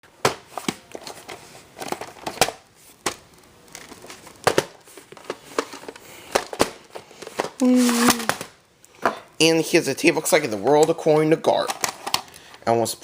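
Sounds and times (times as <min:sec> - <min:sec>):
plastic crinkling: 0:00.7 - 0:08.6.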